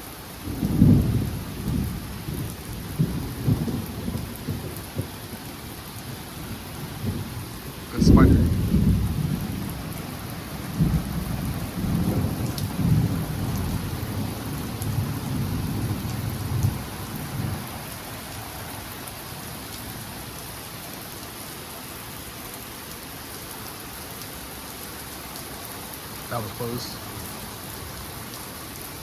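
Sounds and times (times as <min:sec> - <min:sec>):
steady rain: 0:00.0 - 0:29.0
rolling thunder: 0:00.4 - 0:05.5, 0:06.4 - 0:17.7.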